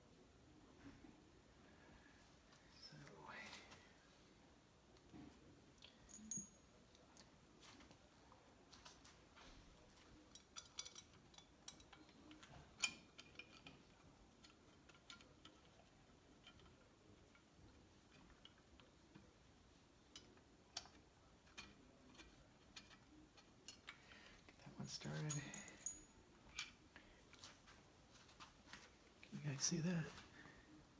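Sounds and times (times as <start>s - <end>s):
small metal parts clicking: 10.3s - 18.9s, 20.1s - 26.8s.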